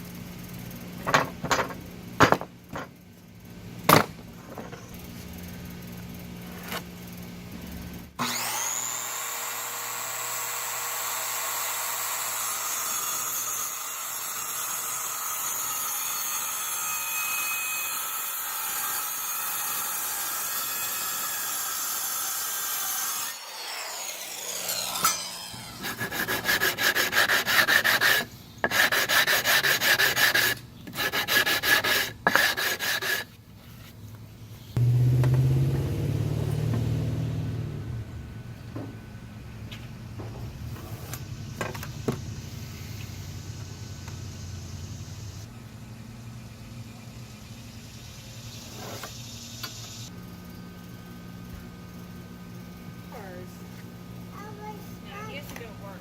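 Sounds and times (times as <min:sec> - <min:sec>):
power tool pulsing bursts: 0:08.2 - 0:28.1
power tool motor cutting wood: 0:08.2 - 0:33.2.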